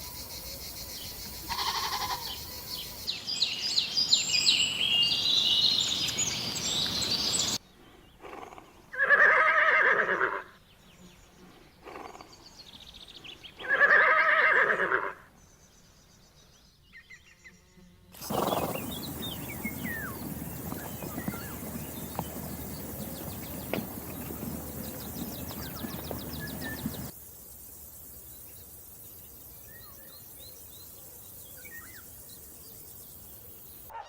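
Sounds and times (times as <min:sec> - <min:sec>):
birds chirping: 0:00.0 - 0:08.9, 0:18.2 - 0:33.9
horse whinnying: 0:08.3 - 0:10.5, 0:13.6 - 0:15.2, 0:18.2 - 0:27.1.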